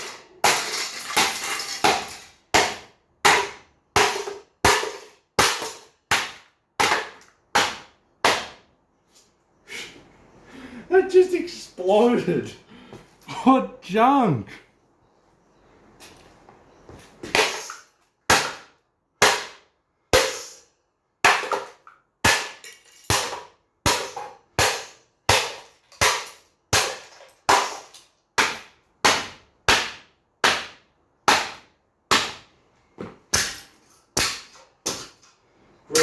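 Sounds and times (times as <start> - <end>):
plastic fan being smashed: 0.0 - 8.6, 17.2 - 20.6, 21.2 - 32.5, 33.2 - 35.3.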